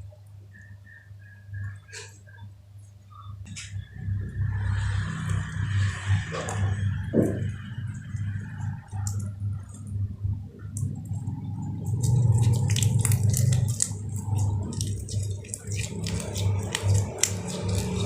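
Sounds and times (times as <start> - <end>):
slime squelching with pops: 10.6 - 18.0.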